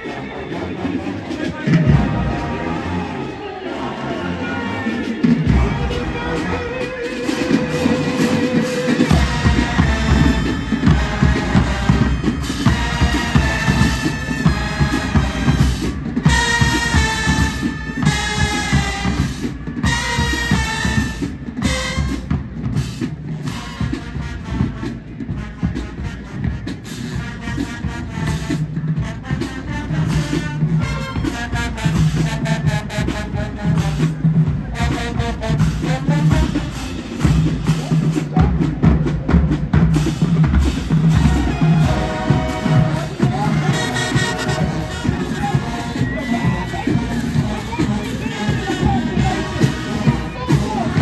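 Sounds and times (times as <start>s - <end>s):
marching band brass: 0.0s - 51.0s
bass drums beating: 5.2s - 26.8s, 27.4s - 51.0s.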